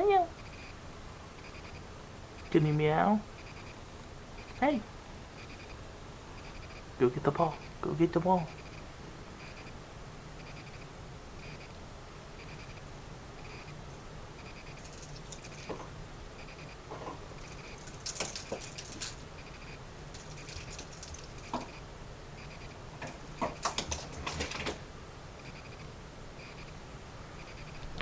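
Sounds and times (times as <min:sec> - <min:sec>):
rattle ball jingling: 0:14.7 - 0:15.9, 0:17.0 - 0:21.8, 0:23.0 - 0:24.8.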